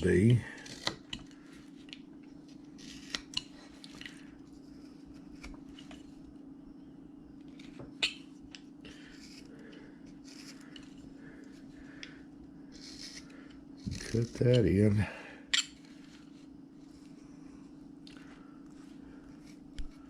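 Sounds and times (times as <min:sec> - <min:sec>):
steady low hum: 0:00.0 - 0:20.0
knife scraping wood: 0:00.2 - 0:01.4, 0:02.7 - 0:06.1, 0:10.1 - 0:11.0, 0:12.7 - 0:14.9.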